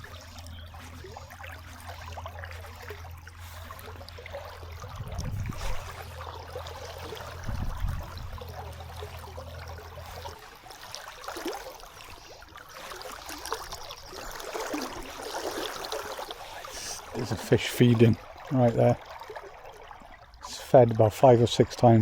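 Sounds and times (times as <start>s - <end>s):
low rumble with bumps: 0.0s - 10.4s
river water rushing: 0.0s - 19.6s.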